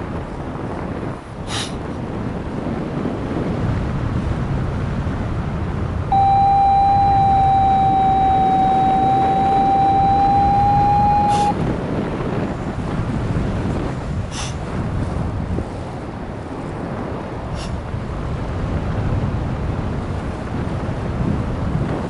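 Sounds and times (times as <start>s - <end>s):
wind buffeting microphone: 0.0s - 22.0s
steady electronic tone: 6.1s - 11.6s.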